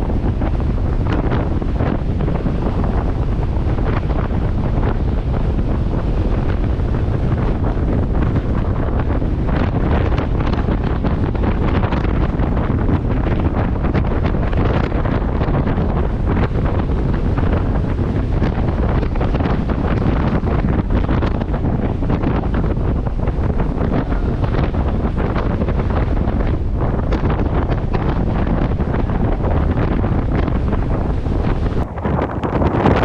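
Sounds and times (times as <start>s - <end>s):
heavy surf rushing: 0.0s - 33.0s
wind buffeting microphone: 0.0s - 33.0s.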